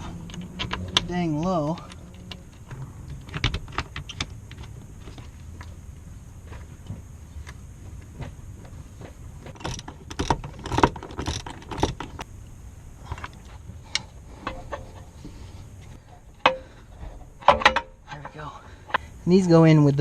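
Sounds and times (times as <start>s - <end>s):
steady low hum: 0.0s - 20.0s
metal tools clinking and knocking: 16.0s - 18.6s.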